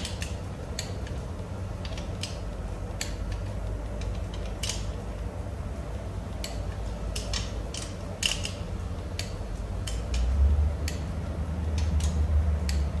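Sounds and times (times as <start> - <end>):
low steady hum: 0.0 - 13.0
hand tools clicking on metal: 6.4 - 11.1.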